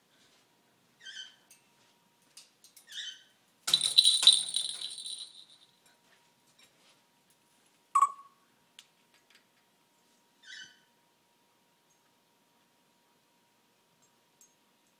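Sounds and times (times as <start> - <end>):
parrot squeaky call: 1.0 - 1.4, 8.0 - 8.3, 10.4 - 10.8
metallic jingle: 3.7 - 5.7.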